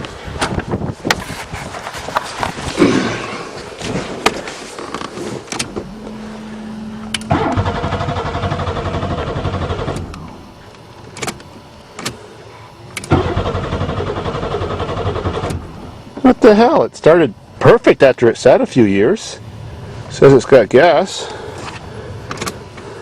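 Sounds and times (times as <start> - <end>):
short steady buzzing tone: 4.8 - 20.4
starter cranking engine: 7.0 - 10.3, 13.0 - 15.7.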